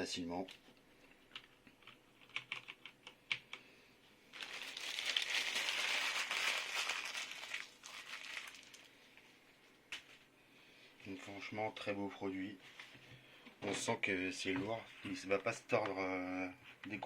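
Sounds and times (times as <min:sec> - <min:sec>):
packaging crinkling: 0:04.3 - 0:08.9.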